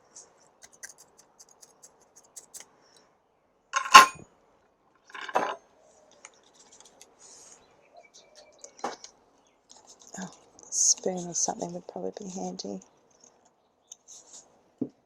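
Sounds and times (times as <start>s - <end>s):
granules scratching on potting mix: 0.0s - 2.7s, 9.7s - 14.5s.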